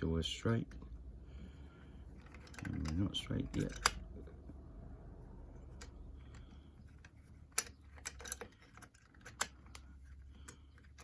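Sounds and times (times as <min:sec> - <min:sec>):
metal tool clicking in lock: 0:02.3 - 0:04.1, 0:07.5 - 0:09.8.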